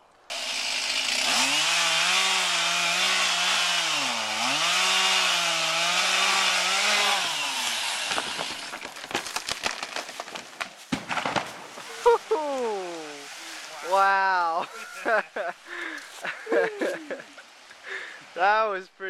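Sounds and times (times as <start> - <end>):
chainsaw cutting through tree: 0.3 - 10.4
wood cracking and snapping: 6.0 - 11.9.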